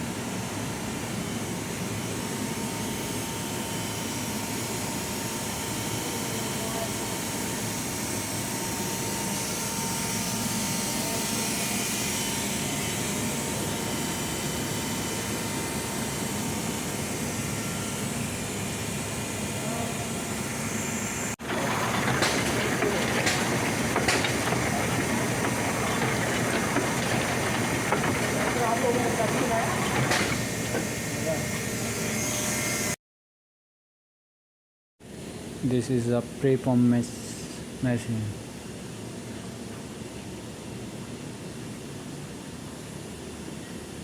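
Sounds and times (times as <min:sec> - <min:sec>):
packing machinery running: 0:21.4 - 0:31.8.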